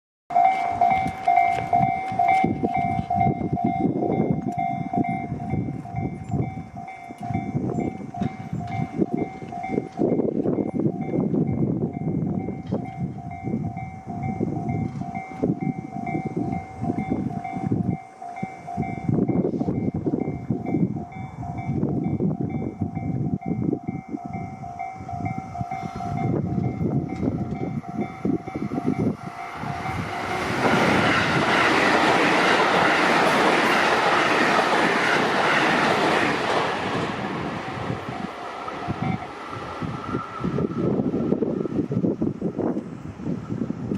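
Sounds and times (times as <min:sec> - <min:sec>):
level crossing bell ringing: 0:00.3 - 0:11.2
train wheel clatter: 0:00.3 - 0:13.4, 0:25.3 - 0:42.9
rushing train noise: 0:00.3 - 0:43.9.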